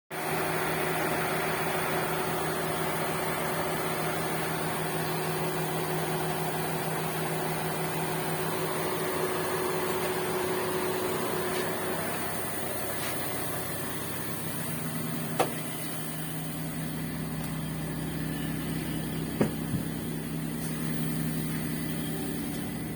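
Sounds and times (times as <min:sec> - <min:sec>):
car air conditioning humming: 0:08.9 - 0:22.9.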